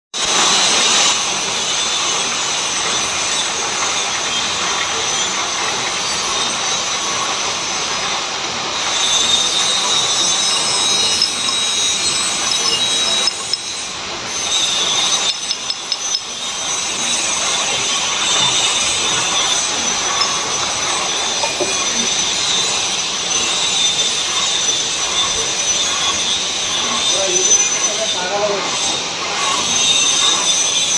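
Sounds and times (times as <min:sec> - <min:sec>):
metal lathe grinding: 0:00.2 - 0:30.9
high squealing tones: 0:08.8 - 0:28.7.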